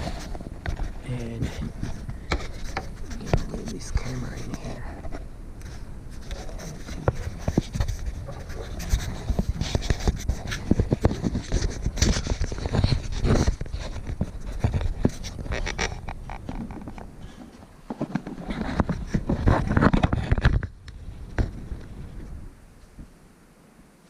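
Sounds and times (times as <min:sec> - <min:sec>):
camera handling knocks and scraping: 0:01.6 - 0:03.5, 0:05.0 - 0:21.7.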